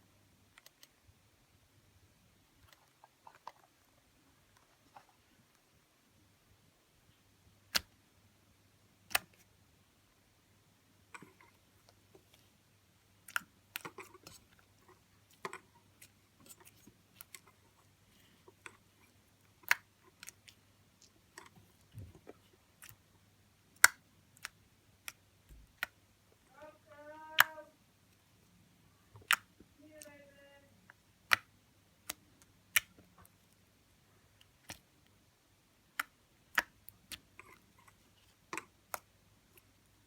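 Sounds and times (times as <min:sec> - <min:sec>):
slime sticky clicks and pops: 0:31.2 - 0:33.0.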